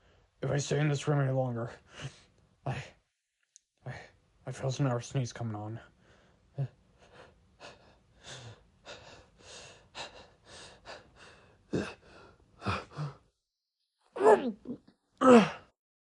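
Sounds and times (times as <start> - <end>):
man stifled sneeze: 14.2 - 15.7.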